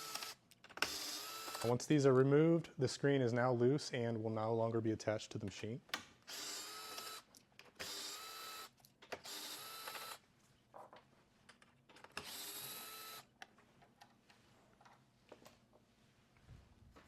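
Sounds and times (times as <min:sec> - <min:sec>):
cordless electric driver running: 0:00.0 - 0:01.6, 0:07.8 - 0:10.2, 0:12.2 - 0:13.3.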